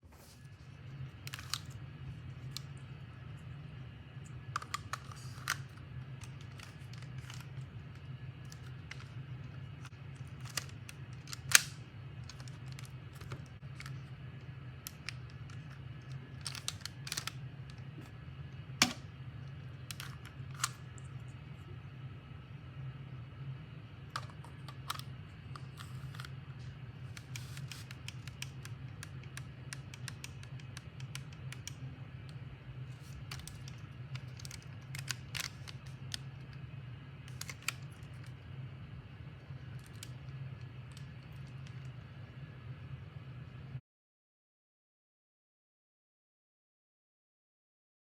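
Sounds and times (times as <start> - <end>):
low hum: 0.0 - 43.8
plastic clacks: 10.3 - 14.0, 14.9 - 17.8.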